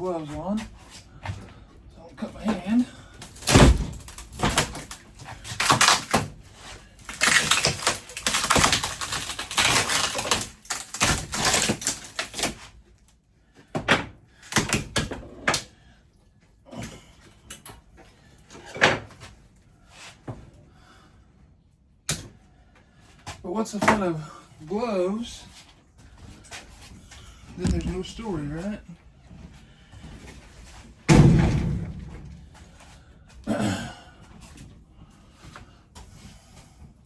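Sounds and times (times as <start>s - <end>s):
scraping and knocking: 27.6s - 28.8s
single knocks and bangs: 31.1s - 32.4s.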